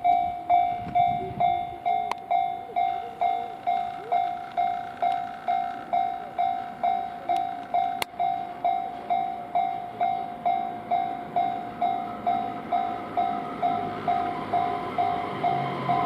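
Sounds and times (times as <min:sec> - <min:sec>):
approaching train noise: 0:00.0 - 0:16.0
level-crossing warning bell: 0:00.0 - 0:16.0.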